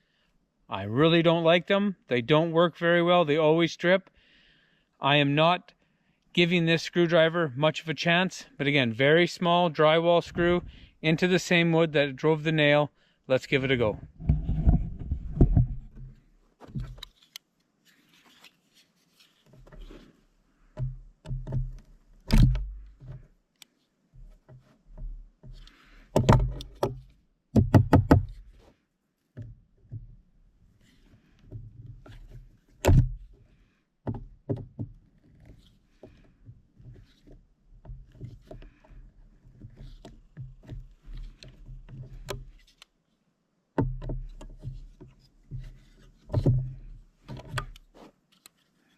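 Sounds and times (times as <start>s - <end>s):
screwdriver clicks and knocks: 20.8s - 23.3s, 26.2s - 28.4s.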